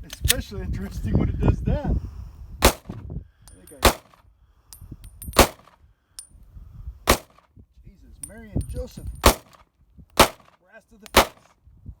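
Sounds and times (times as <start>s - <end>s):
pistol shots: 5.4s - 5.7s, 7.1s - 7.4s, 9.2s - 9.6s, 10.2s - 10.5s, 11.1s - 11.4s.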